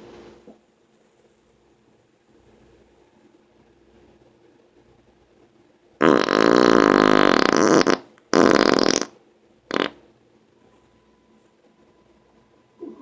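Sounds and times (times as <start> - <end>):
person farting: 6.0 - 10.0.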